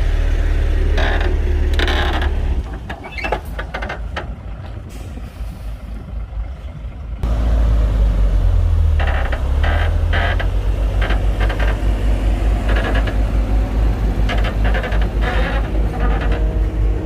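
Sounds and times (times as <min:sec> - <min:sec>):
bulldozer diesel engine rumbling: 0:00.0 - 0:17.0.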